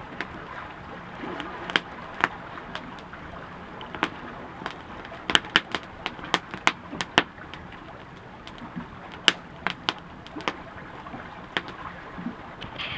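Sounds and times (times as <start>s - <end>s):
campfire crackling: 0.0s - 12.9s.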